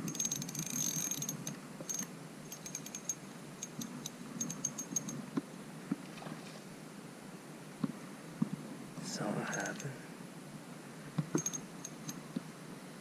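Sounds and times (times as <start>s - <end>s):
fishing reel clicking: 0.1s - 5.1s.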